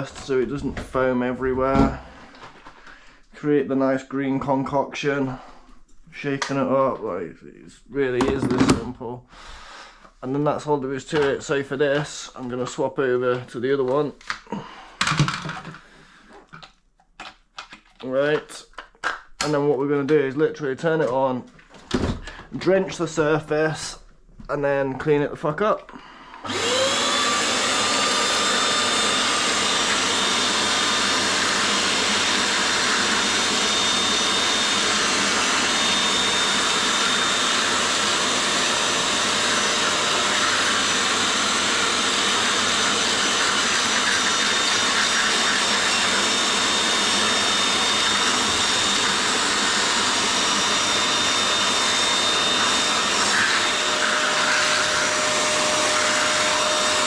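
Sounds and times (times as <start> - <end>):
wet vacuum motor whining: 26.4 - 57.0.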